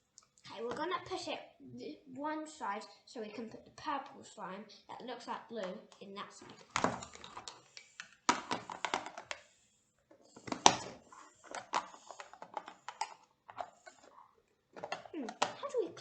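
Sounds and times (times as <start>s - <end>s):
plastic container clicks and knocks: 8.3s - 9.4s, 14.8s - 15.6s.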